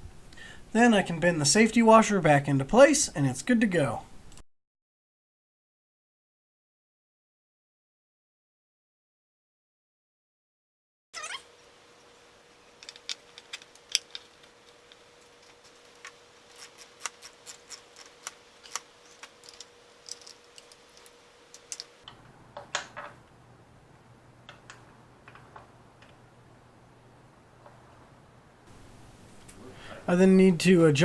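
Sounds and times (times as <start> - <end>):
hand tools clicking and tapping: 12.8 - 23.0.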